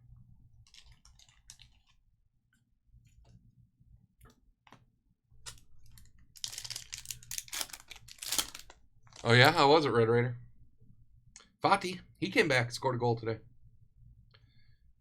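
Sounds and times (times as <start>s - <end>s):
trading cards clicking and rustling: 5.4s - 9.6s.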